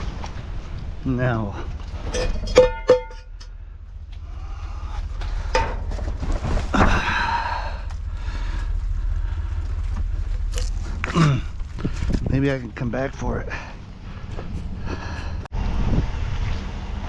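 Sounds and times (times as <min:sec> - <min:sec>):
low steady rumble: 0:00.0 - 0:17.0
breathy exhale: 0:06.7 - 0:09.9, 0:13.5 - 0:15.5.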